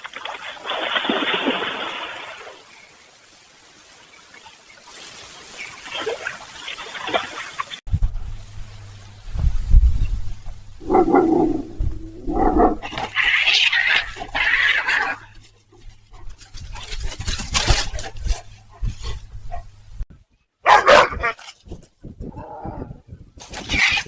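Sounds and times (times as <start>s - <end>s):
dog barking: 10.8s - 13.0s, 20.6s - 21.4s.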